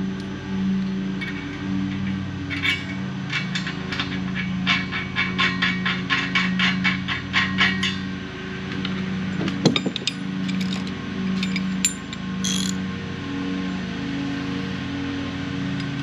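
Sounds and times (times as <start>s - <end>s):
metallic clank: 1.2s - 8.1s, 9.4s - 12.8s
ratchet wrench clicking: 11.4s - 12.8s.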